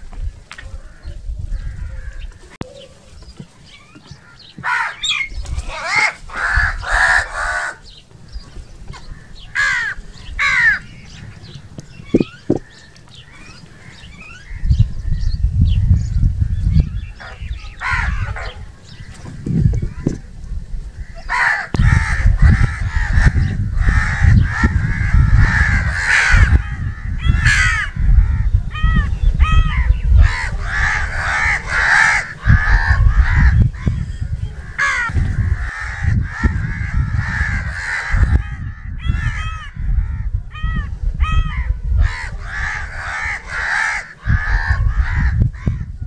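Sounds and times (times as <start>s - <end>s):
crows cawing: 4.1s - 7.9s, 9.0s - 11.3s, 17.2s - 18.5s, 21.0s - 45.9s
steady low rumble: 14.2s - 46.0s.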